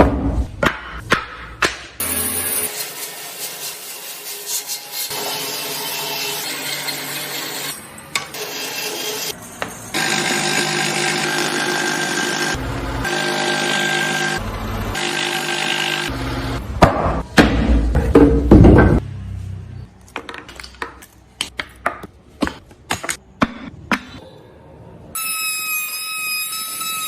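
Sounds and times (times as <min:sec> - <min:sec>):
power tool grinding wood: 0:08.4 - 0:16.6.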